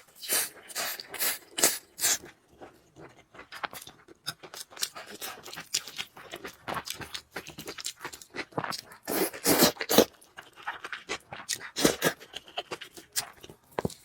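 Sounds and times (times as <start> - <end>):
chewing food: 0.0 - 14.0.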